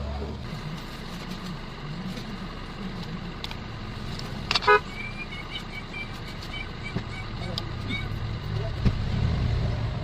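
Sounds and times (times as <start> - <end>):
road traffic rumble: 0.0 - 10.0
vehicle horn toot: 4.6 - 5.0.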